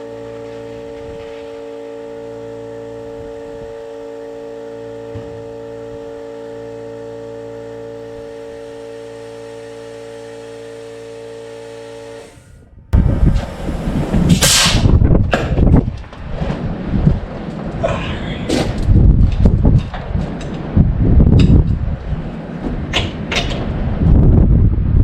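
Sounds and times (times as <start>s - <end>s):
steady machine hum: 0.0s - 25.0s
sharp hiss: 14.3s - 14.8s.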